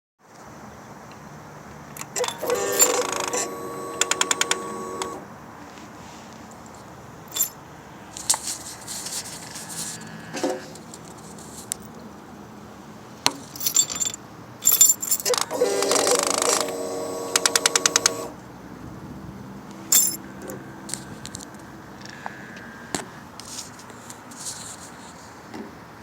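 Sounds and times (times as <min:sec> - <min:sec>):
short electric whirring: 0:02.1 - 0:05.2, 0:15.3 - 0:18.3
light metallic clicks and jingling: 0:06.5 - 0:07.6, 0:13.3 - 0:15.4, 0:19.9 - 0:20.2
sharp actuator clicks: 0:15.3 - 0:18.3.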